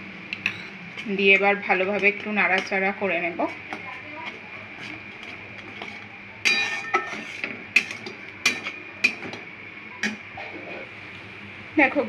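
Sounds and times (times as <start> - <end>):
utensil stirring gravy in a pan: 1.7 - 9.4
utensil clinking against a pan: 3.4 - 9.4.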